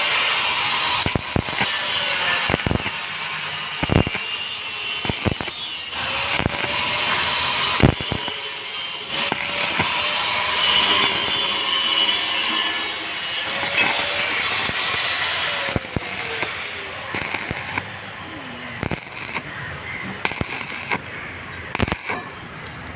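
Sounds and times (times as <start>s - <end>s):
welding arc crackling and sizzling: 0.0s - 22.9s
sharp cracks: 0.6s - 18.1s, 18.7s - 22.9s.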